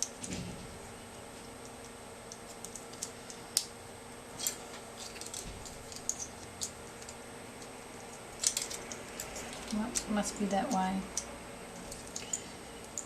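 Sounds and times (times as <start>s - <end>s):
plastic parts clicking: 4.4s - 10.1s.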